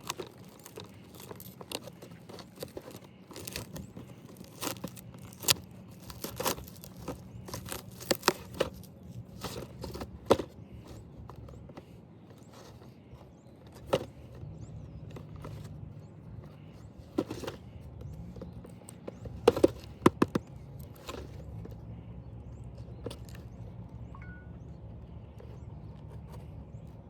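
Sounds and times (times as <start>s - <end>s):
toy and packaging clicks: 0.0s - 10.0s.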